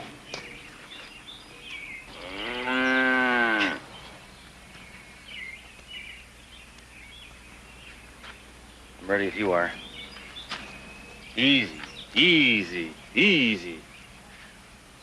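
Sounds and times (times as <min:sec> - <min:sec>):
cow mooing: 0:02.1 - 0:03.9.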